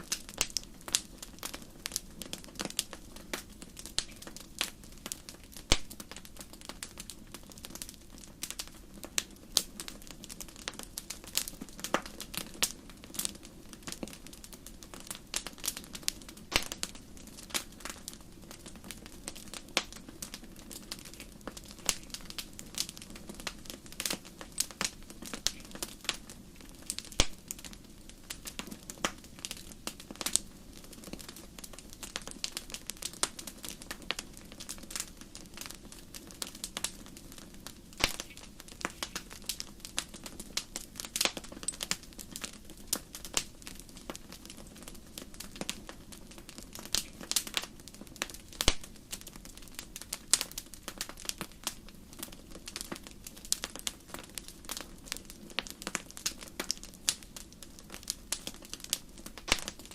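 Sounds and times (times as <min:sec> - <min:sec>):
low hiss: 0:00.0 - 0:55.6
campfire crackling: 0:00.0 - 0:59.9
loud sharp cracks: 0:16.5 - 0:16.8, 0:38.0 - 0:38.4, 0:59.4 - 0:59.8.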